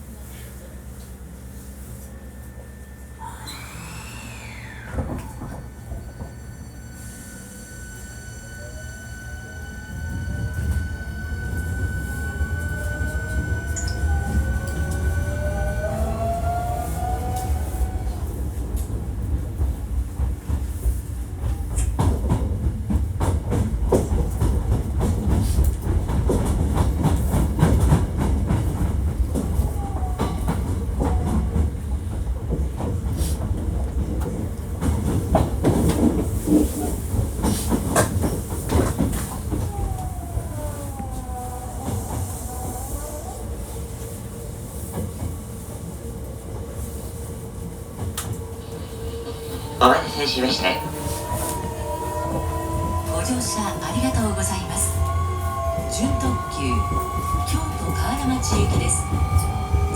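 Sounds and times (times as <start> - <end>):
train inverter whine: 0.1 - 32.8, 43.7 - 59.9
train wheels clattering on rails: 10.0 - 40.2.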